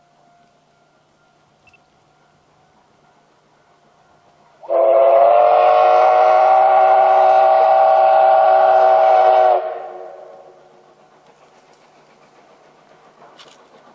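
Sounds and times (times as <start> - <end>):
steam whistle blast: 4.6 - 10.7.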